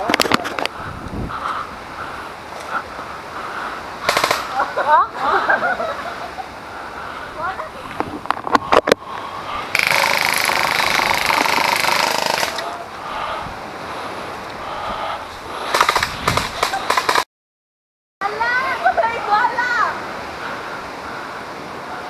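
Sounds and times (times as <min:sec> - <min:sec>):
airsoft guns firing: 0:04.0 - 0:04.5, 0:09.8 - 0:12.7, 0:15.7 - 0:17.2.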